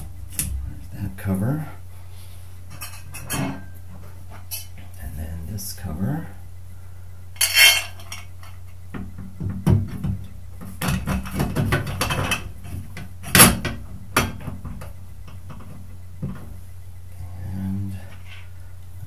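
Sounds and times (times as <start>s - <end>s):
steady low hum: 0.0s - 19.0s
metal parts clinking and rattling: 7.4s - 8.6s.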